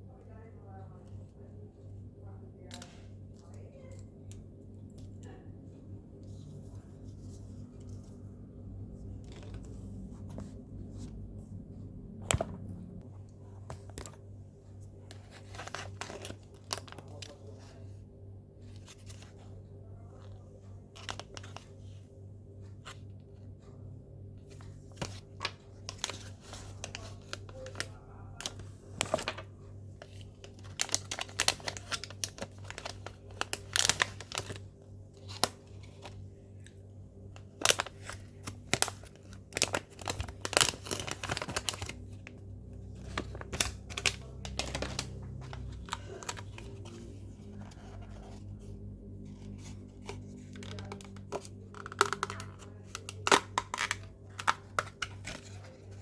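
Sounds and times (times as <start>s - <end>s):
packaging crinkling and tearing: 15.1s - 17.4s, 25.0s - 34.6s, 37.4s - 56.0s.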